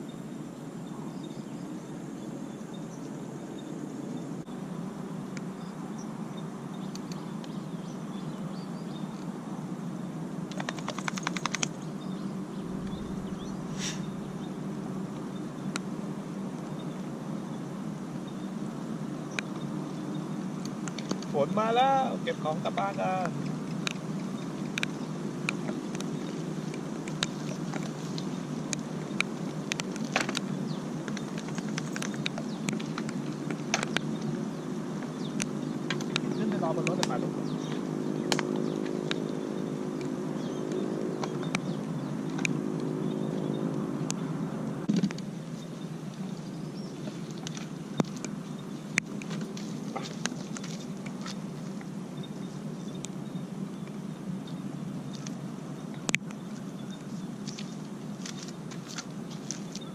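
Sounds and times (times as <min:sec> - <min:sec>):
low outdoor hum: 0:00.0 - 0:59.9
sharp clicks: 0:10.5 - 0:11.7
faint bird chirps: 0:11.4 - 0:15.8
brief hiss: 0:12.8 - 0:14.4.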